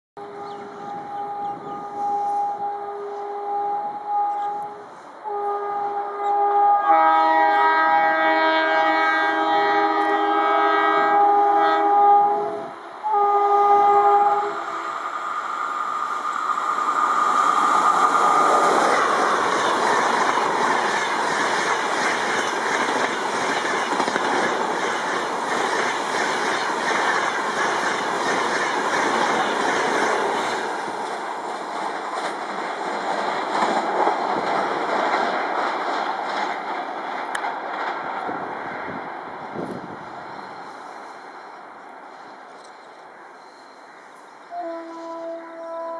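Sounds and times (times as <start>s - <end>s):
train wheels roaring on rail: 0.2s - 45.9s
clickety-clack over rail joints: 18.4s - 40.0s.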